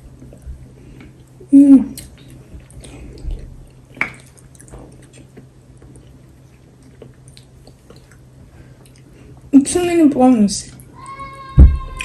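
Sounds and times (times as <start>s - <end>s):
person chewing food: 0.0s - 9.5s.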